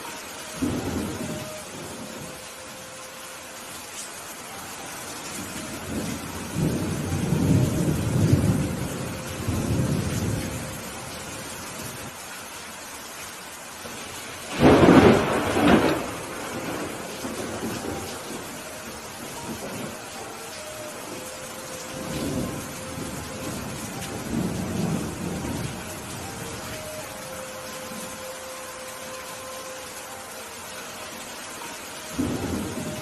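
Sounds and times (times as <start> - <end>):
steady rain: 0.0 - 33.0
rolling thunder rumble: 5.4 - 12.1, 13.9 - 20.2, 20.8 - 27.1, 32.1 - 33.0
close thunder crack: 14.5 - 18.0.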